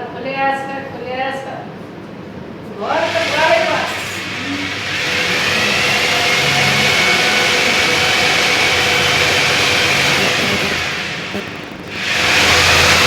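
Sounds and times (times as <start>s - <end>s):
water pump humming with whine: 2.8s - 13.0s.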